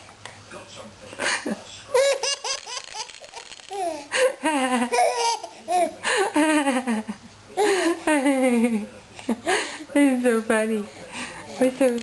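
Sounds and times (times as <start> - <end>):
baby laughing: 1.9 - 6.0.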